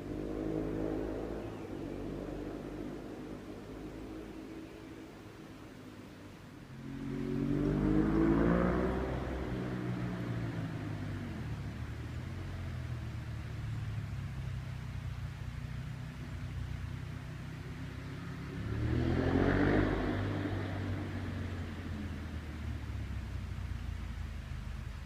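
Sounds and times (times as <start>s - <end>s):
motorcycle engine idling: 11.2s - 18.2s, 21.7s - 25.0s.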